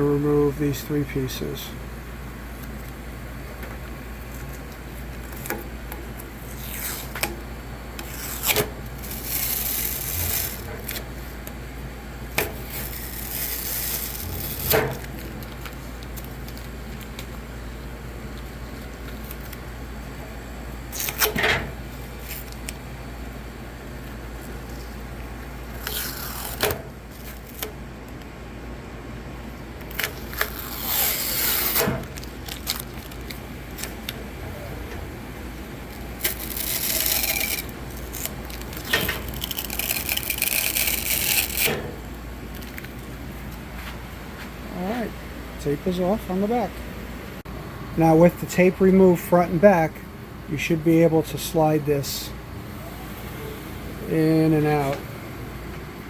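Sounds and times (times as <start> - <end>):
steady low hum: 0.0 - 56.0
tape being peeled off: 4.3 - 7.4, 8.0 - 11.6, 12.4 - 17.3, 20.9 - 21.4, 25.7 - 27.8, 29.8 - 34.2, 35.9 - 41.9.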